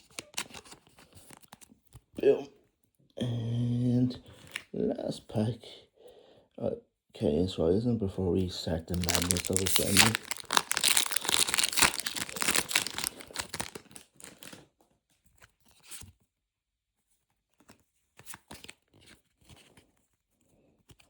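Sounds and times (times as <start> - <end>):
cards rustling: 0.0 - 1.7, 8.9 - 14.6
foil pack tearing and crinkling: 8.9 - 14.6.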